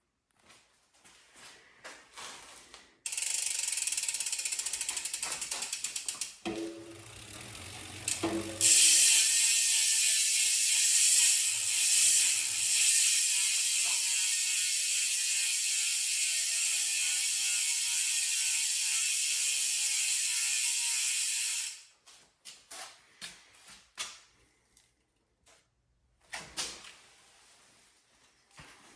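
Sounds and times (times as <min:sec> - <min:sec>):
bicycle freehub buzzing: 0:03.1 - 0:21.9.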